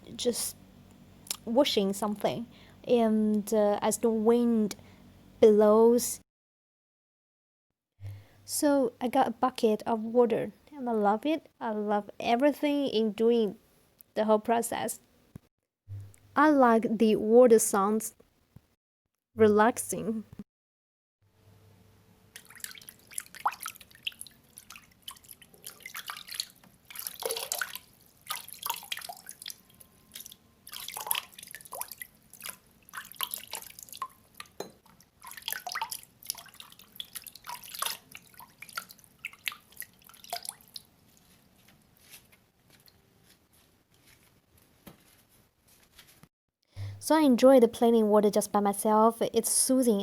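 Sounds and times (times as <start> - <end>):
water splashing and dripping: 22.3 - 41.3.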